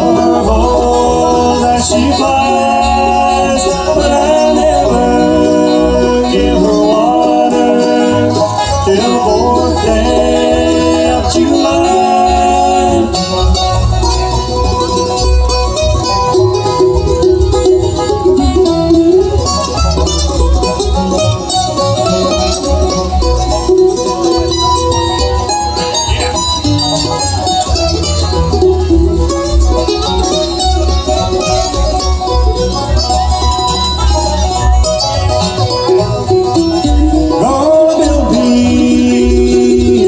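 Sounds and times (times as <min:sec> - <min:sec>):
banjo picking: 0:00.0 - 0:40.0
bluegrass band playing: 0:00.0 - 0:40.0.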